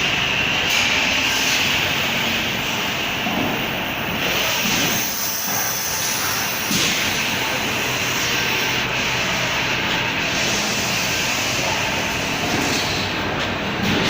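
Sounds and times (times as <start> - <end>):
fabric welding machine hissing: 3.7 - 13.2.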